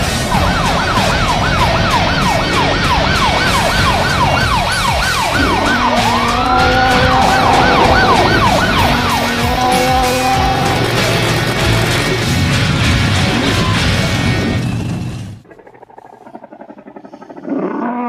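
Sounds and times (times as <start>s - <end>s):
electronic siren yelping: 0.0s - 12.2s
siren rising wail: 0.0s - 12.4s.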